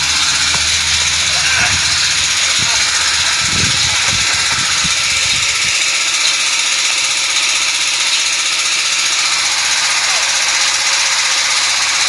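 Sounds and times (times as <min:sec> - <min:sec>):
heavy rain falling: 0:00.0 - 0:06.7.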